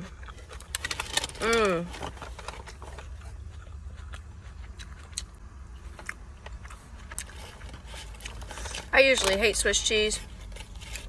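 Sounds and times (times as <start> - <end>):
person chewing crunchy food: 0.0 - 9.4, 10.2 - 11.0
low steady hum: 0.0 - 11.0.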